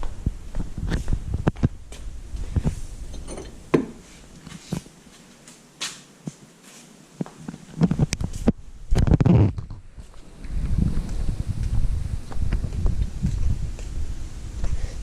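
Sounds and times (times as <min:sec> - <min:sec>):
strap and shackle handling knocks: 0:03.1 - 0:04.0.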